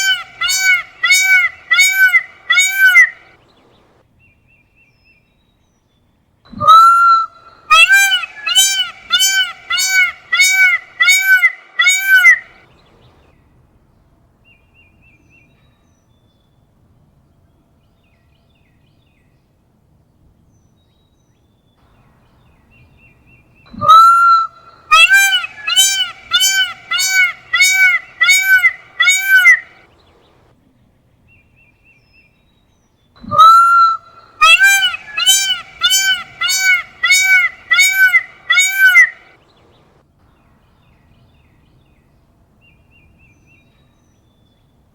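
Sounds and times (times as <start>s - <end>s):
peacock calling: 0.0s - 4.0s, 6.5s - 13.4s, 21.9s - 30.5s, 33.2s - 40.0s.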